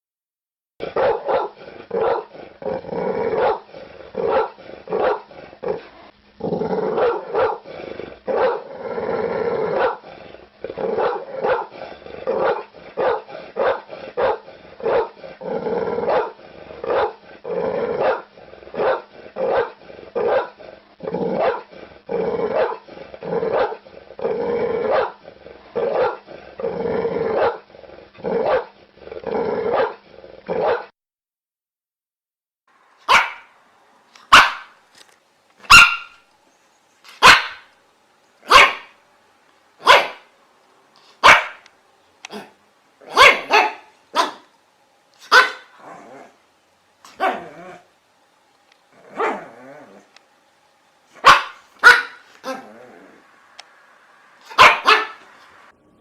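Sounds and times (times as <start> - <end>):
dog barking: 0.9 - 2.3, 4.2 - 5.3, 7.0 - 7.6, 8.4 - 8.6, 9.8 - 10.0, 11.0 - 11.7, 12.3 - 15.2, 16.1 - 17.2, 18.0 - 20.6, 21.4 - 21.7, 23.5 - 23.8, 24.9 - 25.2, 25.9 - 26.2, 30.6 - 30.9, 33.0 - 33.5, 34.3 - 34.8, 35.7 - 36.2, 37.1 - 37.7, 38.4 - 39.0, 39.8 - 40.3, 41.2 - 41.7, 42.3 - 44.5, 45.2 - 45.8, 47.1 - 47.6, 49.1 - 49.6, 51.2 - 52.6, 54.5 - 55.3.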